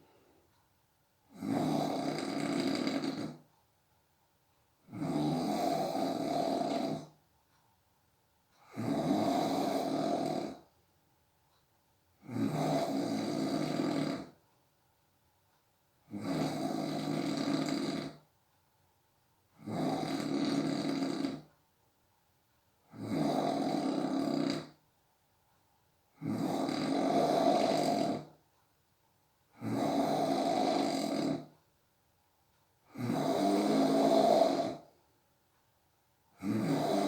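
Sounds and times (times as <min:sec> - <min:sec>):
quiet breaths: 0:00.0 - 0:03.7, 0:04.3 - 0:07.8, 0:08.4 - 0:14.7, 0:22.8 - 0:24.9, 0:25.5 - 0:28.8, 0:29.4 - 0:31.7, 0:32.5 - 0:37.0
person snoring: 0:01.3 - 0:03.4, 0:04.8 - 0:07.2, 0:08.6 - 0:10.7, 0:12.2 - 0:14.4, 0:16.1 - 0:18.2, 0:19.6 - 0:21.5, 0:22.9 - 0:24.8, 0:26.1 - 0:28.4, 0:29.5 - 0:31.6, 0:32.9 - 0:35.0, 0:36.4 - 0:37.0.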